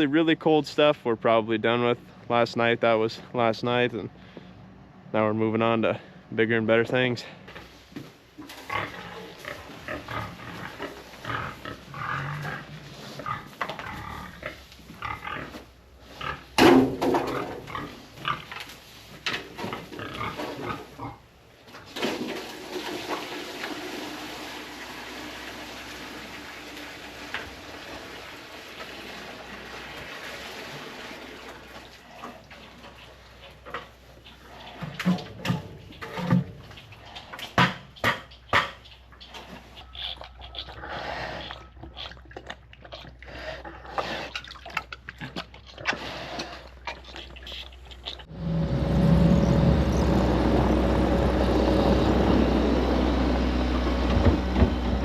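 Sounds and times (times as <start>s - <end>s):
pigs grunting: 8.4s - 16.5s, 17.1s - 18.5s, 19.5s - 21.3s, 32.0s - 53.4s.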